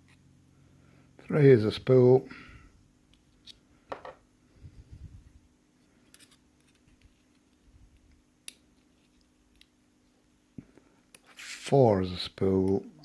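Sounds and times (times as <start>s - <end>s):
soft handling noise: 4.9s - 11.3s.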